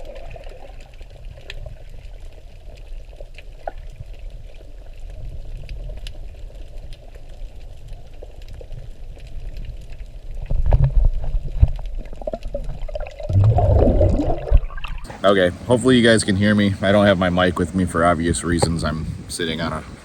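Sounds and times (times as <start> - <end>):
water sloshing and bubbling: 0.0 - 15.8.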